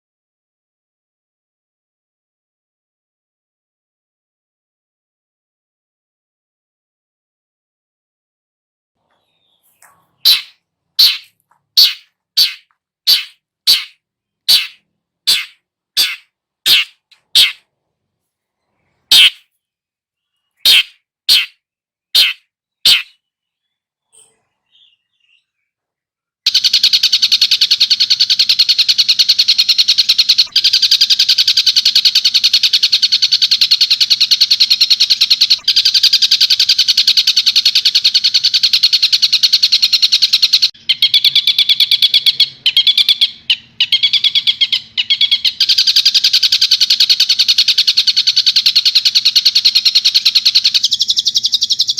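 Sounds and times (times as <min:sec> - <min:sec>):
kingfisher calls: 0:09.7 - 0:17.6, 0:19.1 - 0:19.4, 0:20.6 - 0:21.6, 0:22.2 - 0:23.2
kingfisher chattering trill: 0:09.8 - 0:17.6, 0:19.1 - 0:19.4, 0:20.6 - 0:21.6.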